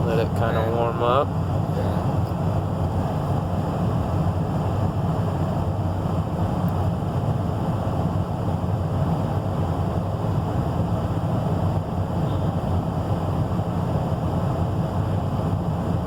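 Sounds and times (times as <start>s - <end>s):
low steady hum: 0.0s - 5.6s.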